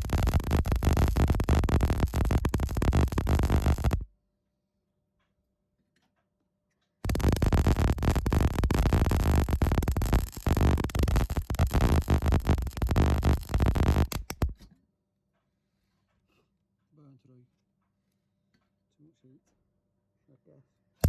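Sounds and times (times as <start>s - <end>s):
welder arc crackling and buzzing: 0.0s - 4.1s, 7.0s - 14.6s.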